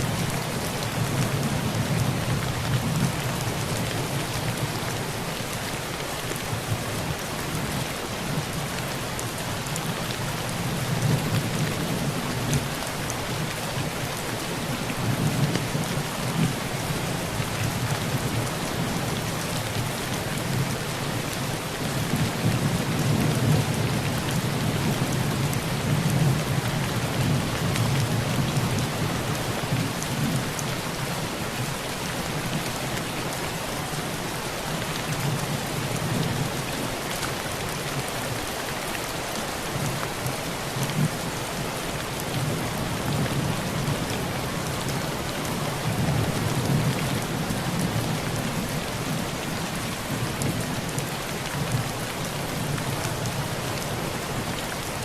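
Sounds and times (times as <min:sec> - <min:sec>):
heavy rain on a tin roof: 0:00.0 - 0:55.0.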